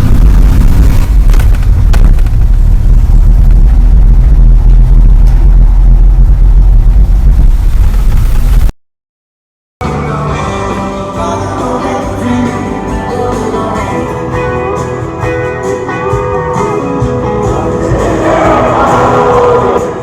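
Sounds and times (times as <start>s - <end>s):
low rumble: 0.0s - 8.7s
song with guitar and singing: 9.8s - 20.0s.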